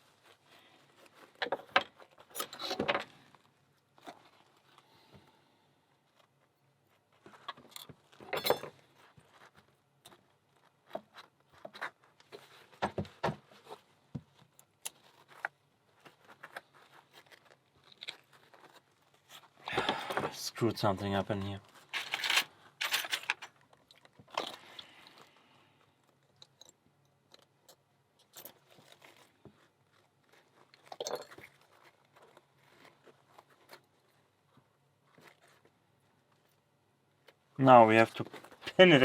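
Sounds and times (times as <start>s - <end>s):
small metallic clicks and clinks: 21.9s - 24.5s.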